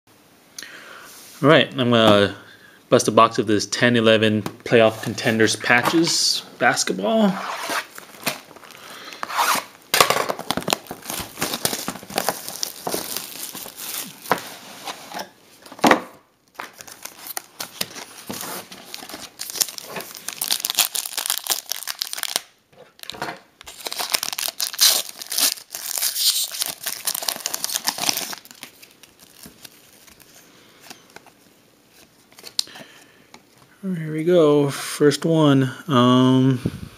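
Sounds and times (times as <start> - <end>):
plastic wrapping ripping and crinkling: 7.4 - 15.0, 16.5 - 31.3.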